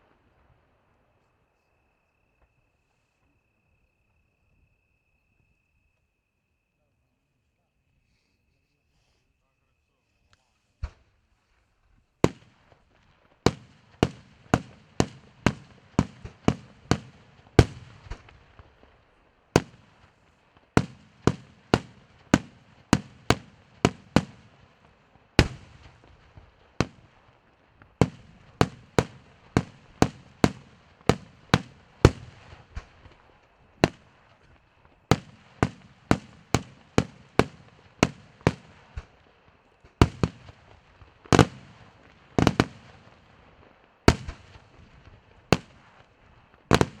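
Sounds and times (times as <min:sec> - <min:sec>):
fireworks shells bursting: 0:20.8 - 0:27.2, 0:27.8 - 0:33.2, 0:33.8 - 0:39.2, 0:39.9 - 0:43.2, 0:44.1 - 0:44.9, 0:46.7 - 0:47.0.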